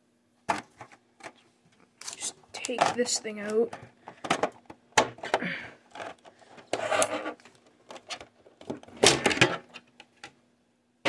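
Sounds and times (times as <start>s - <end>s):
packaging crinkling and rustling: 0.8s - 3.2s.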